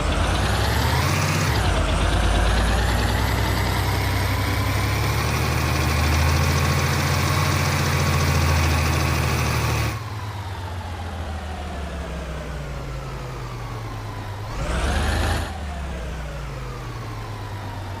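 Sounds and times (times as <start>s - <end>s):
truck diesel engine rumbling: 0.0s - 10.1s.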